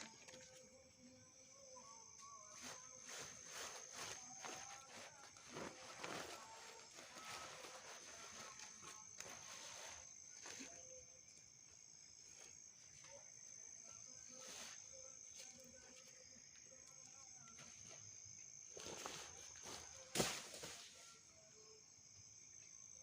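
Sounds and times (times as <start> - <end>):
high-pitched insect trill: 0.0 - 23.0.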